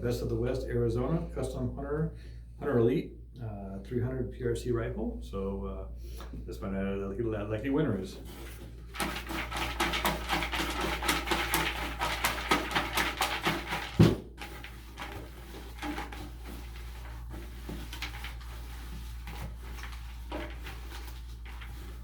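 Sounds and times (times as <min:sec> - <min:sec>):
tickets rattling in a container: 0:08.4 - 0:22.0.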